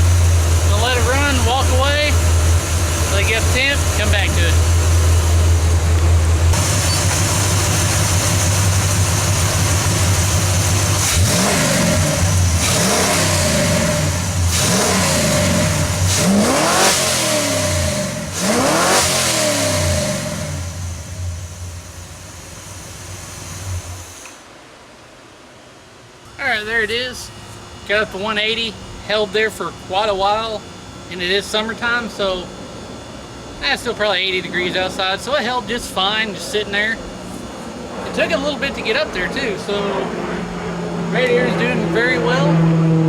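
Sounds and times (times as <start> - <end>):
truck engine idling and revving: 0.0 - 24.2, 37.0 - 43.0.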